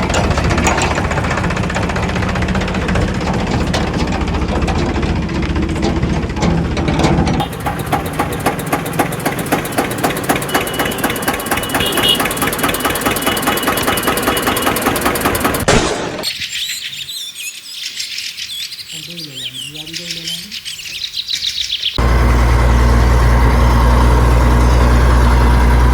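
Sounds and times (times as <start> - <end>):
engine knocking: 0.0 - 15.7, 22.0 - 25.9
birds chirping: 7.4 - 25.9.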